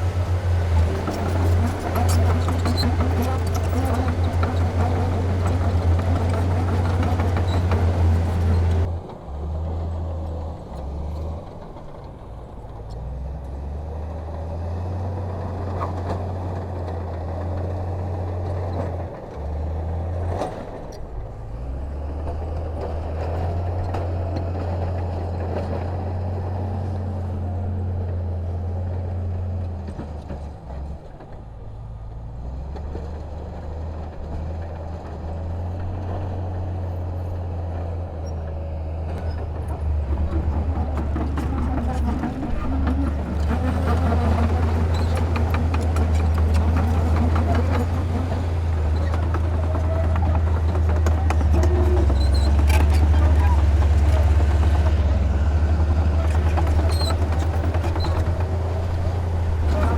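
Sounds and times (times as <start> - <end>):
loud full sound over engine: 0.0 - 9.0
heavy diesel engine droning: 0.0 - 30.9, 31.5 - 59.9.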